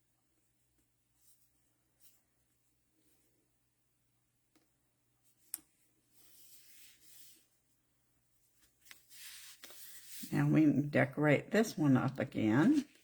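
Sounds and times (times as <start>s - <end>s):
card stock rustling and sliding: 8.8s - 10.3s.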